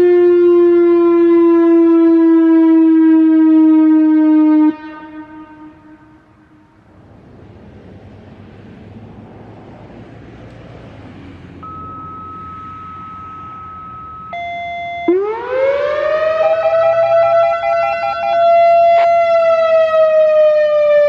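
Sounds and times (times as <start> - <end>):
electronic warning siren: 0.0 - 6.6, 11.6 - 21.0.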